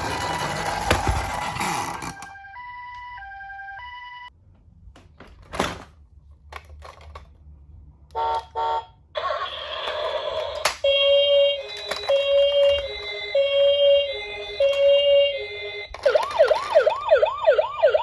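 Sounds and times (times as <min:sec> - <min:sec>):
toy electronic two-tone siren: 0:00.0 - 0:04.3, 0:08.2 - 0:18.0.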